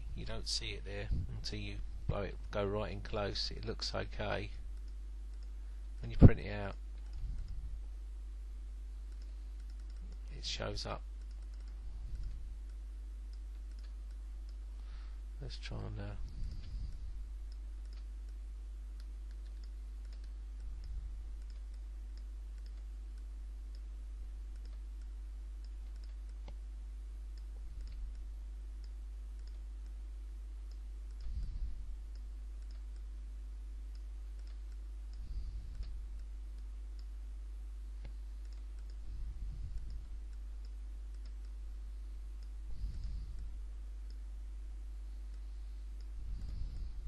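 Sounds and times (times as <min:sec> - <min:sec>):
soft low thumps: 0:00.0 - 0:10.3, 0:11.0 - 0:15.4, 0:37.9 - 0:47.0
low electrical hum: 0:00.0 - 0:47.0
computer mouse clicking: 0:09.1 - 0:10.2, 0:11.2 - 0:14.6, 0:16.3 - 0:18.4, 0:19.0 - 0:23.9, 0:24.5 - 0:26.6, 0:27.4 - 0:28.2, 0:28.8 - 0:30.0, 0:30.6 - 0:31.5, 0:32.1 - 0:33.1, 0:33.9 - 0:37.1, 0:38.0 - 0:41.6.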